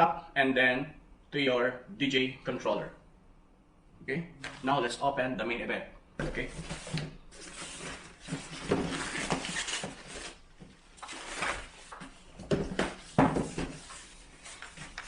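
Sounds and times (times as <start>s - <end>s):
packing rustling and scraping: 6.6s - 10.4s.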